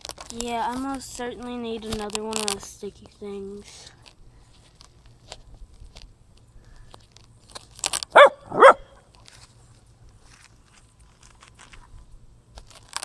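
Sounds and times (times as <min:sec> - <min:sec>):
handling clicks and rustles: 0:00.0 - 0:13.0
dog barking: 0:08.1 - 0:09.0.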